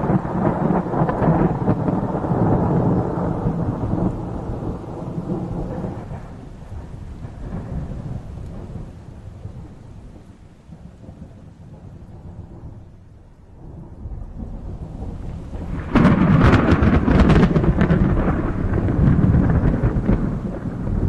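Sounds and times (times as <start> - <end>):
rain: 0.0 - 21.0
thunder rumbling: 0.0 - 21.0
thunderclap crackle: 0.0 - 21.0.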